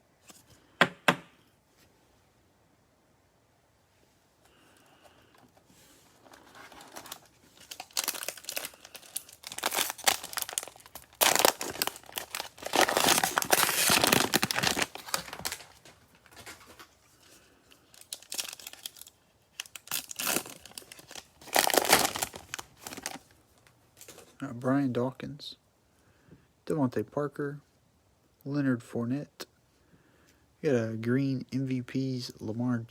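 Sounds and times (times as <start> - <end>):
plastic wrapper tearing and crinkling: 6.2 - 17.0, 17.8 - 23.3.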